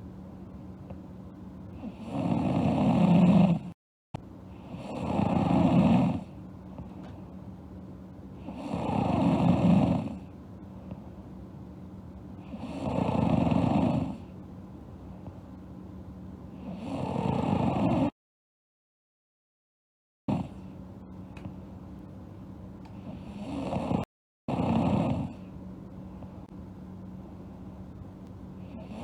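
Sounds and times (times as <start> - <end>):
girl snoring: 1.8 - 3.8, 4.6 - 6.3, 8.4 - 10.3, 12.4 - 14.3, 16.6 - 18.2, 23.0 - 25.4, 28.7 - 29.0.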